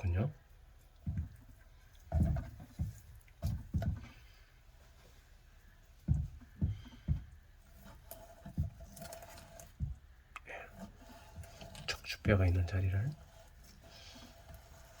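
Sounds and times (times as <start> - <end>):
dull knocks: 2.1 - 4.2, 6.0 - 7.4, 9.8 - 10.1.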